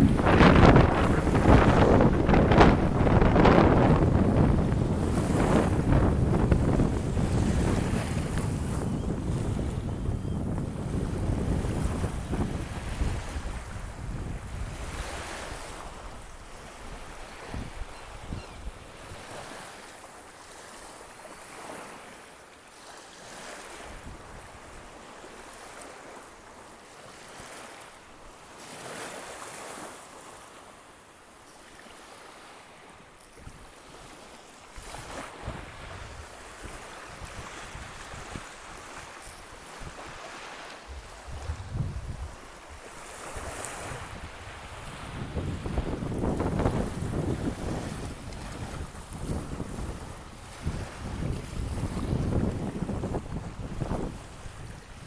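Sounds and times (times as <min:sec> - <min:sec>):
wind buffeting microphone: 0:00.0 - 0:19.3, 0:34.8 - 0:55.0
waves washing onto beach: 0:00.0 - 0:55.0.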